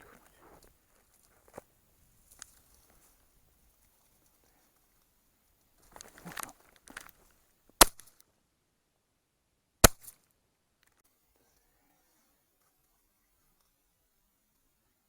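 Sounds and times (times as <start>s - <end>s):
soft rustling: 0.0s - 7.8s
shotgun shots: 9.8s - 10.1s.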